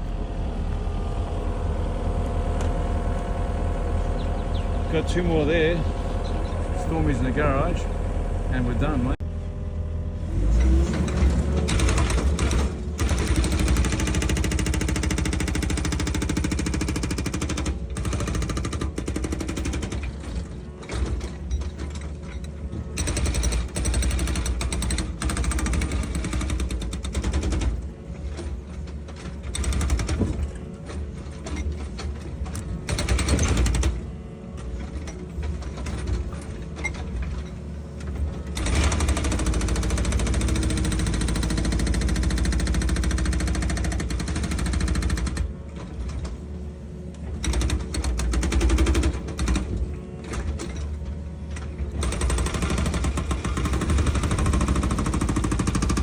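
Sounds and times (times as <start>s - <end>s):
excavator diesel engine under load: 0.0s - 56.0s
fast mechanical rattle: 10.6s - 30.6s, 31.3s - 34.2s, 34.8s - 46.4s.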